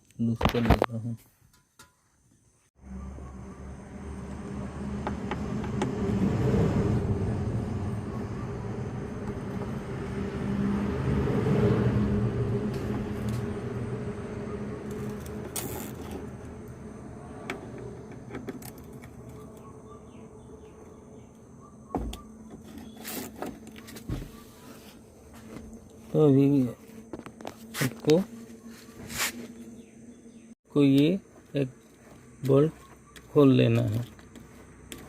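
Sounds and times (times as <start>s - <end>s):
vehicle engine running: 2.8s - 21.7s.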